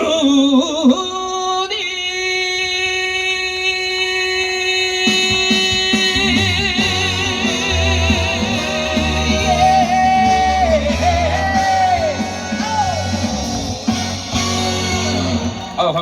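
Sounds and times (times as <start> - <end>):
backing track with bass: 5.1 - 16.0
instrumental melody with bending notes: 5.5 - 16.0.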